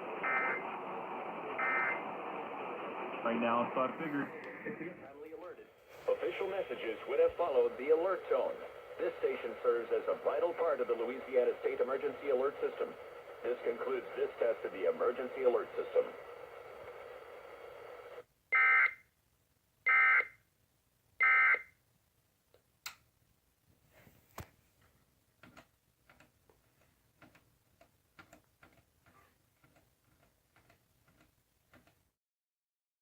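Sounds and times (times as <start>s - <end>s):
buzzy digital data tone bursts: 1.6s - 2.0s.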